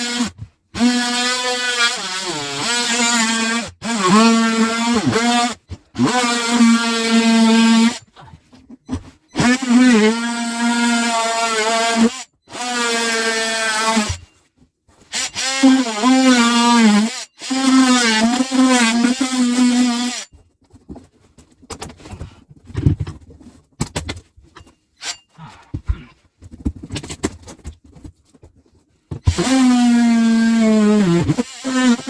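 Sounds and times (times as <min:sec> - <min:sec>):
power drill motor running: 0:29.2 - 0:32.0.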